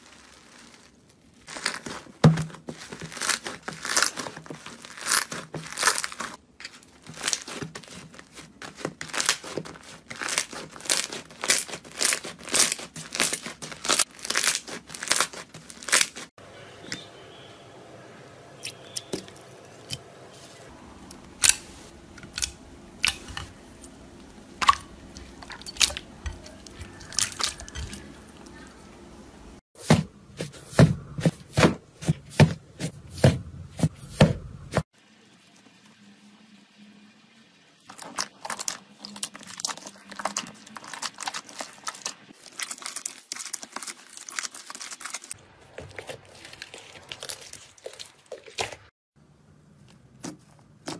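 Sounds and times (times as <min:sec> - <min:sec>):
slime crackling and popping: 0:00.0 - 0:16.3, 0:37.9 - 0:48.8.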